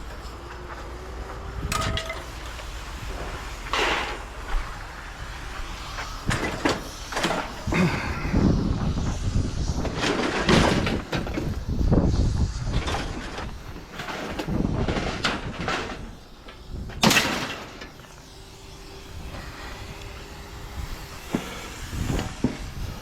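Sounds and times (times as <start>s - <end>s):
objects clattering and knocking: 1.7s - 2.6s.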